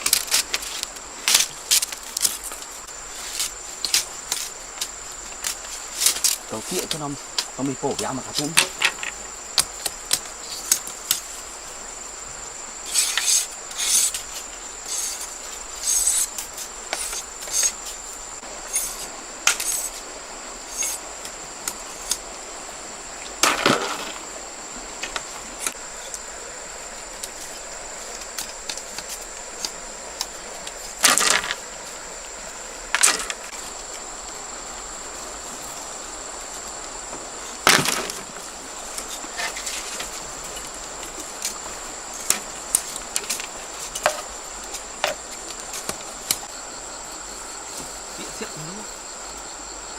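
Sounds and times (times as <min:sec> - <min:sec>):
bamboo knocking and cracking: 0:03.4 - 0:11.3, 0:37.6 - 0:38.4
high-pitched insect drone: 0:11.6 - 0:22.2.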